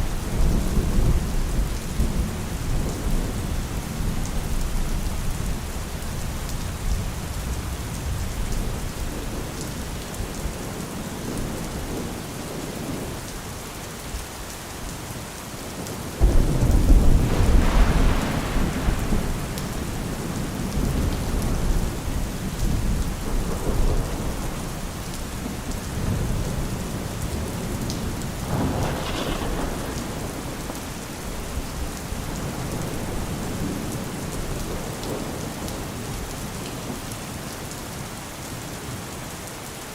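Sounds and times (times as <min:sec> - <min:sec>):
thunder clap and rumble: 0:00.0 - 0:13.3, 0:15.8 - 0:37.0
steady rain falling: 0:00.0 - 0:39.9.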